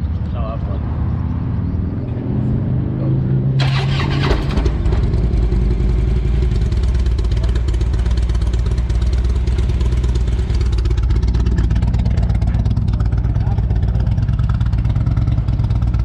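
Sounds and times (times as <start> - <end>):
motorcycle engine idling: 4.7 - 16.0.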